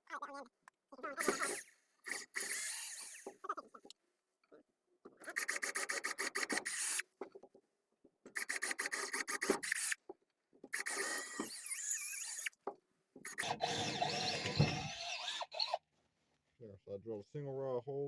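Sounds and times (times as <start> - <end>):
power drill boring into wood: 1.2 - 3.4, 8.4 - 10.0, 10.7 - 12.6, 13.2 - 15.8.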